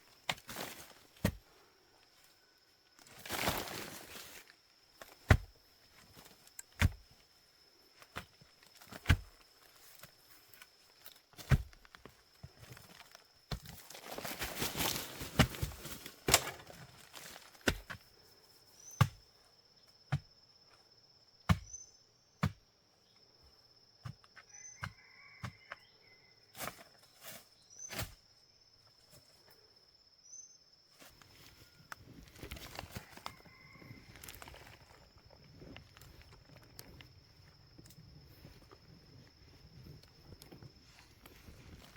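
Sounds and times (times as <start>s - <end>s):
sharp knocks and thuds: 5.0s - 5.5s, 11.4s - 11.9s, 21.5s - 21.8s, 22.4s - 22.7s.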